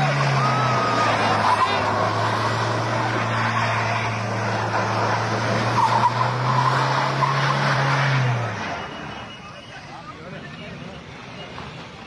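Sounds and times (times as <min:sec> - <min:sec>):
car engine revving: 0:00.0 - 0:09.3
tyres skidding and squealing: 0:00.0 - 0:12.0.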